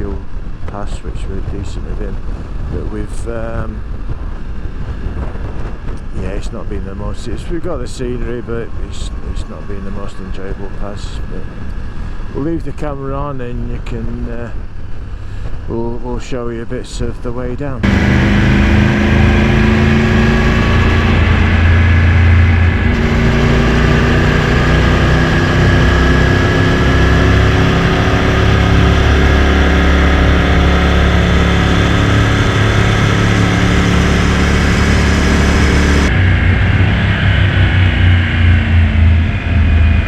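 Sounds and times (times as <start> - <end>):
wind rush on microphone: 0.0 - 15.8, 17.7 - 40.0
motorcycle engine running: 17.8 - 40.0.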